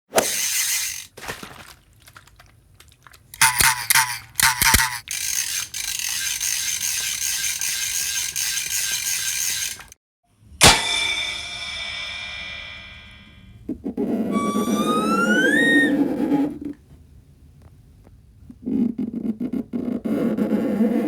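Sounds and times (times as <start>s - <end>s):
ratchet-like clicking: 0.2s - 1.1s, 3.3s - 10.0s
ringing struck hit: 10.6s - 13.5s.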